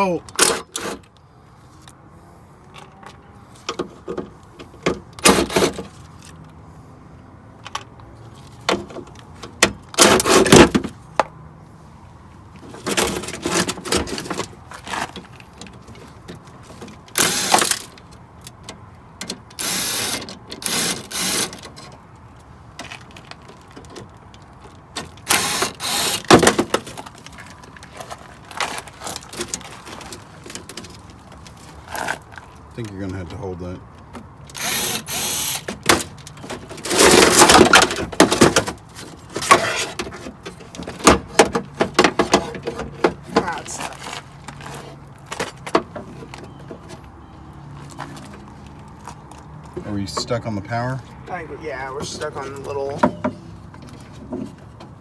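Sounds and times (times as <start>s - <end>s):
cordless power tool: 19.6s - 21.6s, 34.6s - 35.7s.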